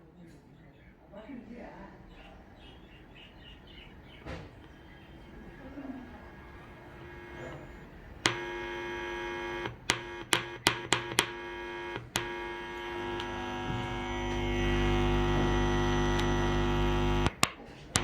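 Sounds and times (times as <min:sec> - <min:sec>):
steady electronic tone: 0:04.8 - 0:17.3
sharp clicks: 0:08.2 - 0:18.0.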